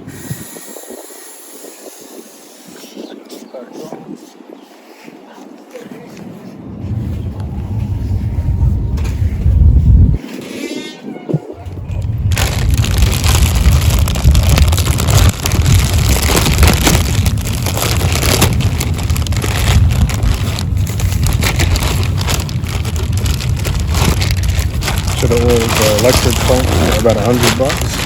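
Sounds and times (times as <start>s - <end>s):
hand pump rushing air: 0.0s - 2.7s.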